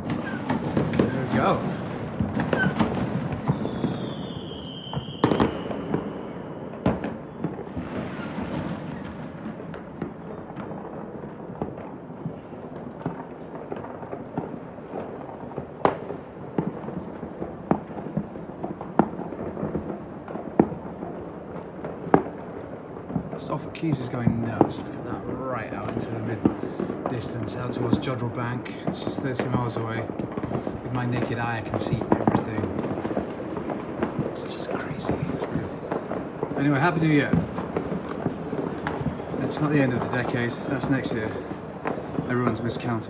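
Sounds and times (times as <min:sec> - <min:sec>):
fireworks rumble of bangs: 0:00.0 - 0:43.0
sharp firework cracks: 0:00.0 - 0:43.0
high whistle: 0:03.4 - 0:06.4.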